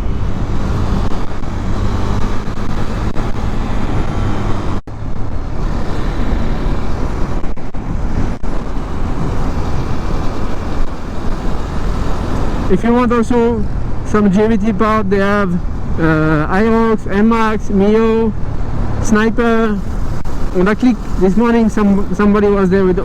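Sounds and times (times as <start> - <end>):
motorcycle engine running: 0.0 - 14.1
wind and road noise: 0.0 - 23.0.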